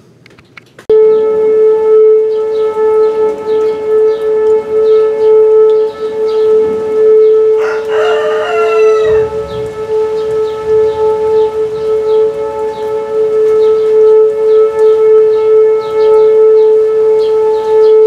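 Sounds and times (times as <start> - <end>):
tornado warning siren: 0.9 - 18.0
wavering falling siren tone: 1.0 - 18.0.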